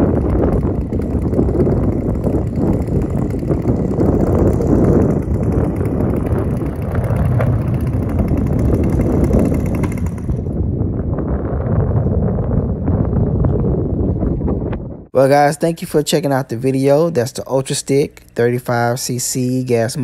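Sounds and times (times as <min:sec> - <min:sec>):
gusty wind buffeting microphone: 0:00.0 - 0:15.5.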